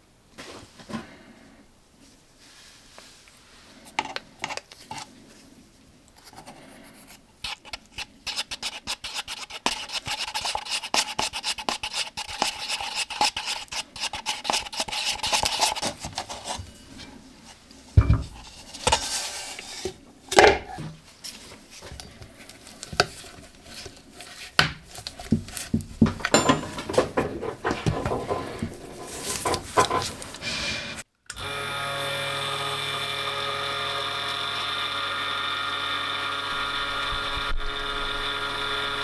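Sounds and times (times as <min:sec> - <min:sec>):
thin ringing tone: 0:26.3 - 0:26.9
tape scratchy rasping strokes: 0:27.2 - 0:31.0.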